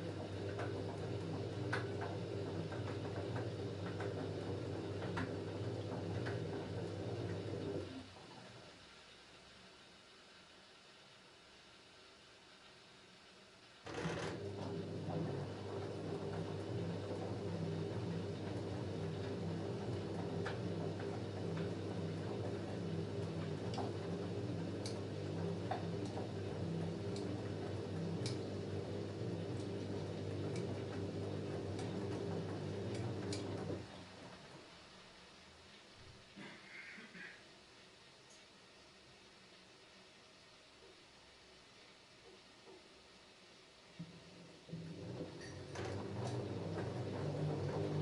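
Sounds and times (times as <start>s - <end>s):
washing machine running: 0.0s - 9.0s, 13.8s - 36.5s, 43.8s - 48.0s.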